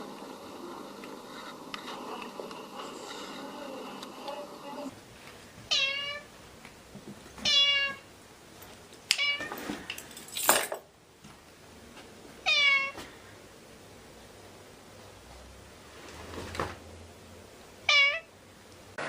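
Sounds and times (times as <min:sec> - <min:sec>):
cat meowing: 0:05.7 - 0:06.3, 0:07.4 - 0:08.0, 0:12.4 - 0:13.0, 0:17.9 - 0:18.3.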